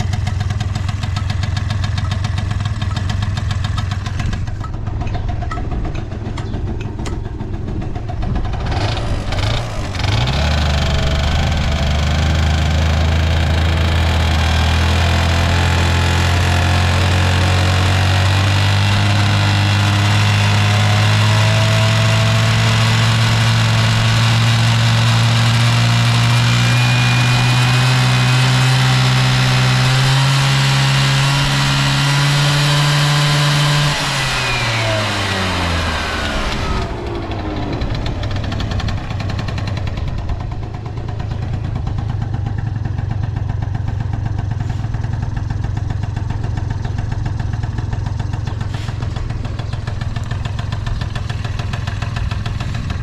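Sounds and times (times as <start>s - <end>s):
scooter engine revving: 0.0s - 53.0s.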